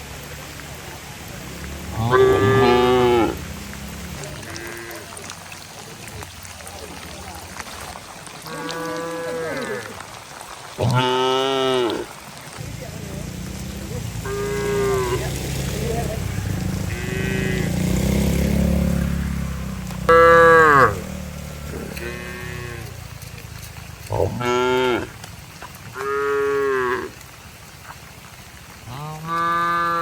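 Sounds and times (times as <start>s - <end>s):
cattle mooing: 1.9s - 3.4s, 4.4s - 5.1s, 8.5s - 10.0s, 14.2s - 17.8s, 20.1s - 21.0s, 21.7s - 23.0s, 24.1s - 25.1s, 26.0s - 27.2s, 28.9s - 30.0s
low steady rumble: 12.6s - 30.0s.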